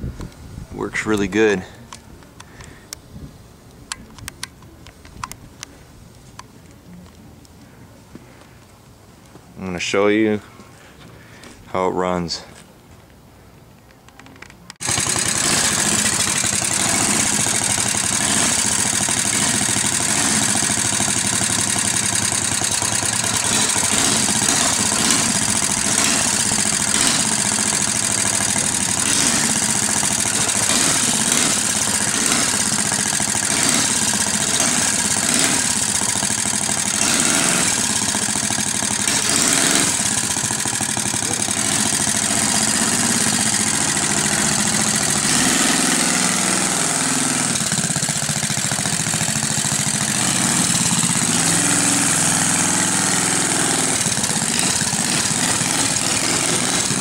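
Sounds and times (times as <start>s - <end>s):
small engine running: 14.8s - 57.0s.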